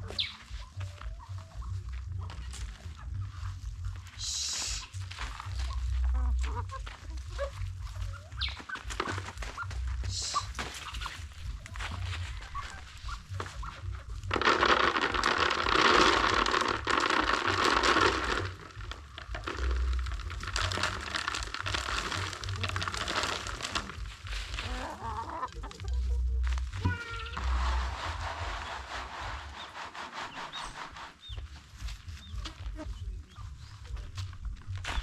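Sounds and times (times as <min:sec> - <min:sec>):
chickens clucking: 0:00.0 - 0:35.0
loud rushing rustling noise: 0:14.3 - 0:18.9, 0:27.4 - 0:32.0.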